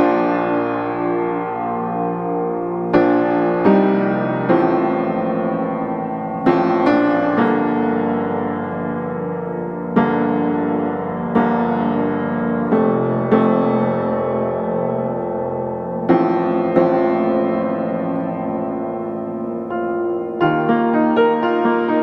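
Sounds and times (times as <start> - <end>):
solo piano slow chords: 0.0 - 22.0.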